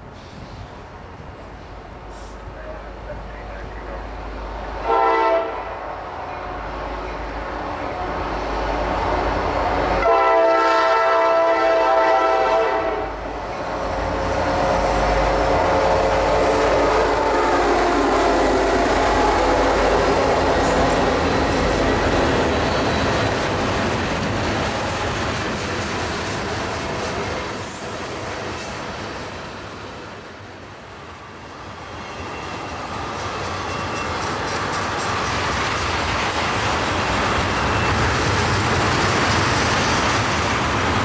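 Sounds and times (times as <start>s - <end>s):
train rolling with wheel clatter: 0.0s - 41.0s
train horn blast: 4.8s - 6.8s, 10.0s - 13.2s, 14.6s - 20.8s.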